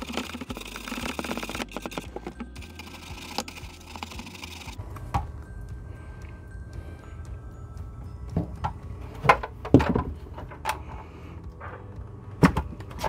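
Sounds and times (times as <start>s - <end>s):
hard objects knocking and clunking: 8.2s - 13.0s.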